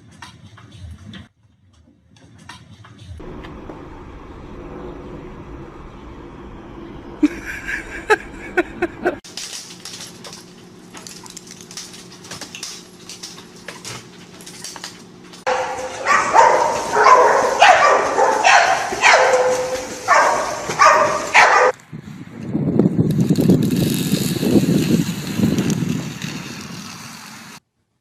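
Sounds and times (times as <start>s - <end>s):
low rumble: 3.2s - 9.2s
dog barking: 15.5s - 21.7s.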